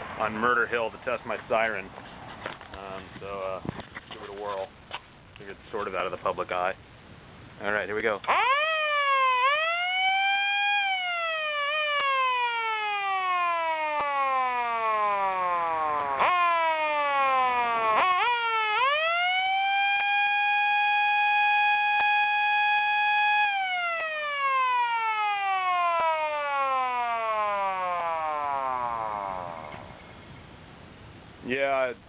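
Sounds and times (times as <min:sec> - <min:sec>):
police siren wailing: 0:08.3 - 0:29.9.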